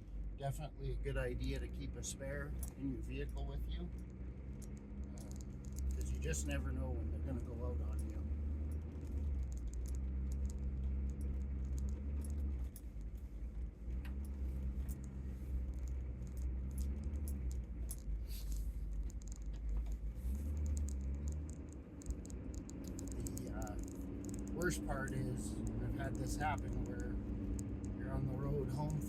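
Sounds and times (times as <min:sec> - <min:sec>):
truck engine and road drone: 0:00.0 - 0:29.0
light metallic jingling rattle: 0:01.0 - 0:29.0.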